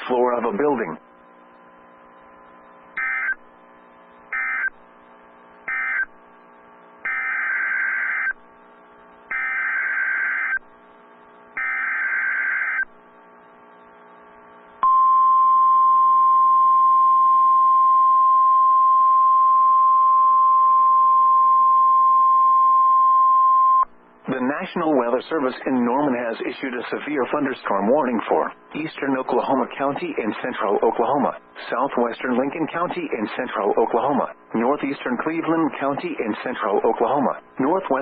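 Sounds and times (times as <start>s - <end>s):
buzzing digital data bursts: 3.0s - 3.4s, 7.0s - 8.4s, 9.3s - 10.6s, 11.6s - 12.8s
steady warning alarm tone: 3.0s - 3.5s, 4.3s - 4.8s, 5.6s - 6.2s, 7.0s - 8.4s, 9.3s - 10.6s, 11.6s - 12.9s.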